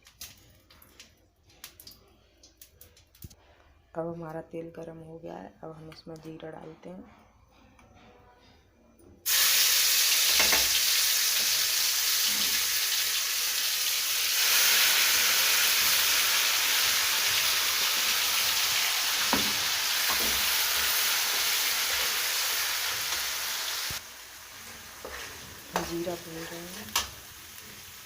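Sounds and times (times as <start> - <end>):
seeds sizzling in hot oil: 9.3 - 28.0.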